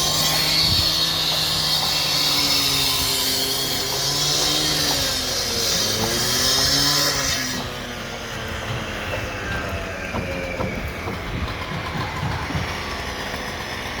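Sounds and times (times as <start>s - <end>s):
knocks and rattles: 8.4s - 13.7s.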